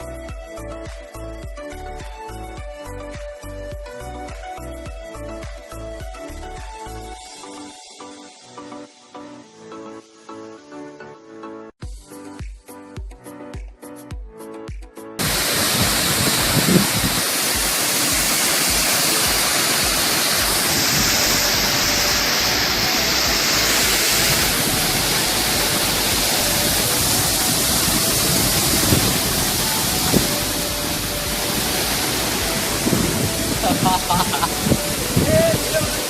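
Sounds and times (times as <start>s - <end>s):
waterfall rushing: 15.2s - 36.0s.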